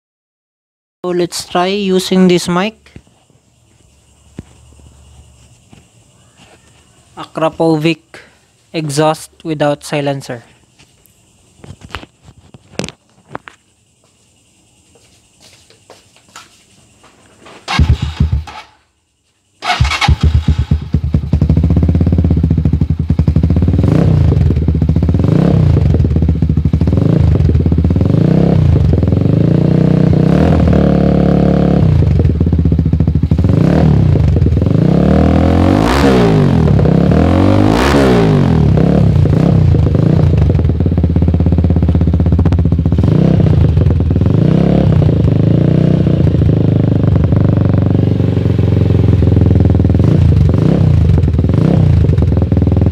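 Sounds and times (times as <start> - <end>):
motorcycle engine revving: 17.4 - 18.9, 19.6 - 52.9.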